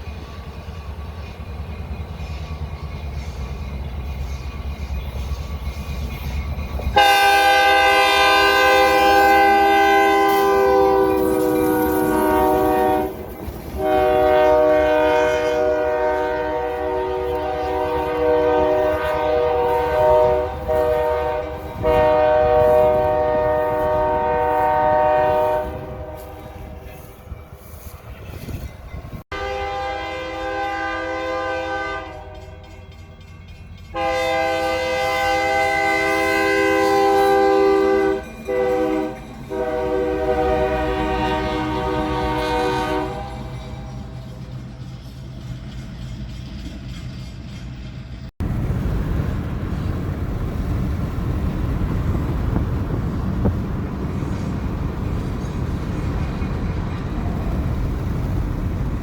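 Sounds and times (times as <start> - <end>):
locomotive engine rumbling: 0.0 - 59.0
locomotive air horn blasts: 6.9 - 27.1, 29.3 - 32.7, 33.9 - 44.2.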